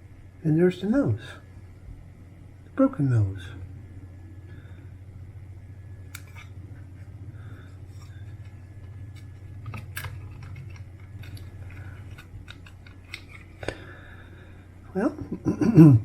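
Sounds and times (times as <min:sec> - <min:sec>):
low hum: 0:00.0 - 0:16.0
plastic parts clicking and scraping: 0:06.1 - 0:06.5, 0:07.6 - 0:13.9.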